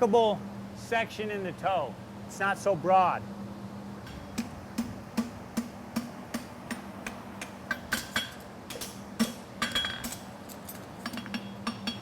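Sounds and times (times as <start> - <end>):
hammer striking steel on anvil: 4.0 - 10.3, 11.0 - 12.0.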